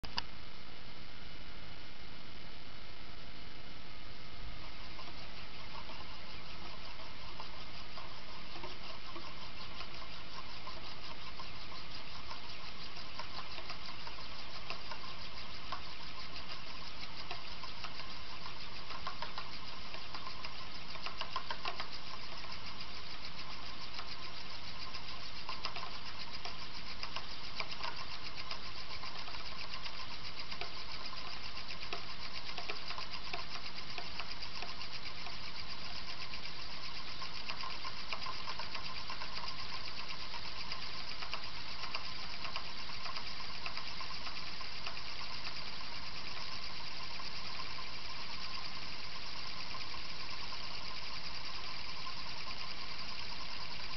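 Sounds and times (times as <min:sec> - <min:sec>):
spinning metal disk humming: 0:03.5 - 0:53.9.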